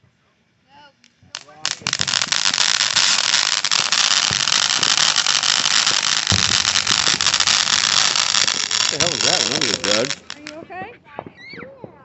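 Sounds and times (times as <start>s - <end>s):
firework hissing and crackling: 1.0s - 10.6s
low thump: 6.3s - 7.3s.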